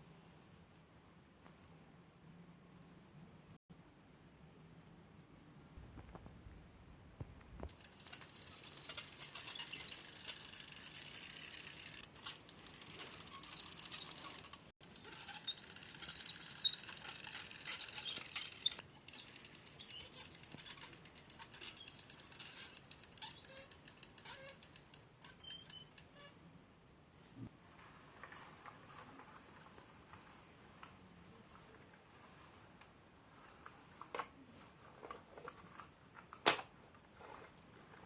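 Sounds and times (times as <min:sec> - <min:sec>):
small mechanism clicking whir: 0:07.7 - 0:26.2.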